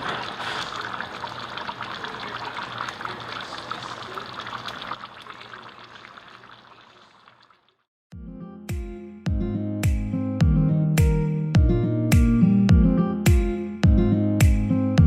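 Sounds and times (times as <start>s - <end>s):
water pouring and trickling: 0.0s - 7.9s.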